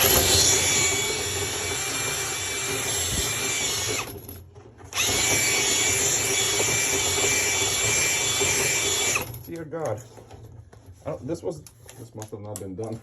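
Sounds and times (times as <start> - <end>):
electric motor whining: 0.0 - 4.2, 4.9 - 9.4.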